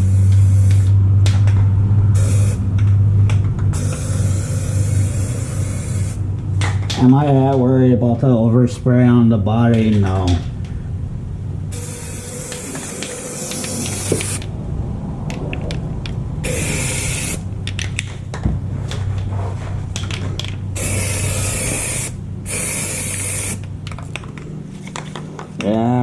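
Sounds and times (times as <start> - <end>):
steady low hum: 0.0 - 26.0
aerosol can spraying: 2.2 - 2.6, 3.8 - 6.2, 11.7 - 14.4, 16.4 - 17.4, 20.8 - 23.7.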